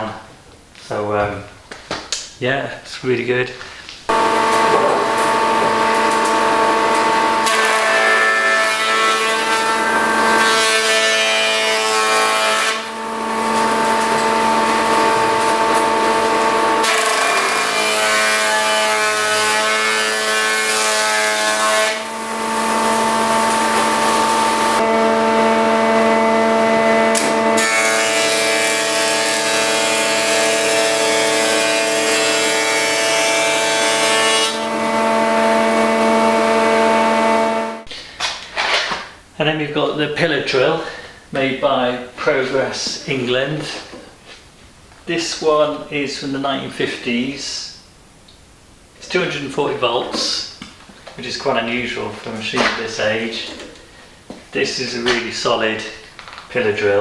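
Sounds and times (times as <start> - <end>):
woodworking machine whine: 4.1 - 37.9
wood cutting noise: 4.1 - 39.0.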